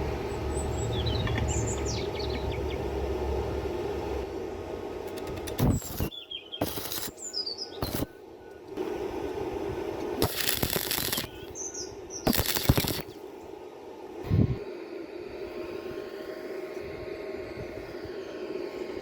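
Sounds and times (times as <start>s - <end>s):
arc welder crackling: 5.0s - 13.4s.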